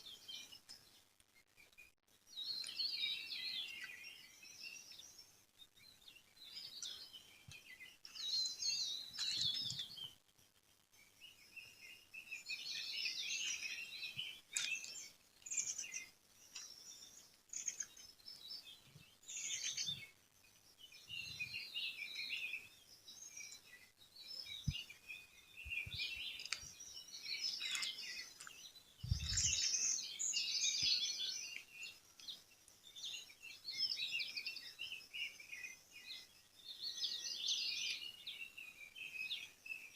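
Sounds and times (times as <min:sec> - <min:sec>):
small birds chirping: 0:00.0 - 0:39.9
soft low thumps: 0:29.0 - 0:29.6.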